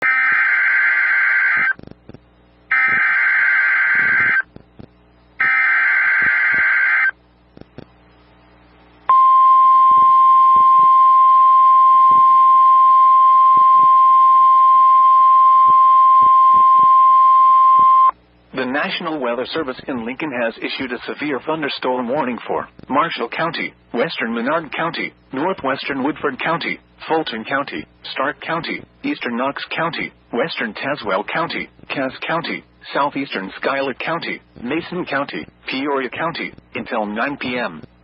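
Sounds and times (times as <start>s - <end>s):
steady alarm tone: 0.0s - 1.8s, 2.7s - 4.5s, 5.4s - 7.2s, 9.1s - 18.1s.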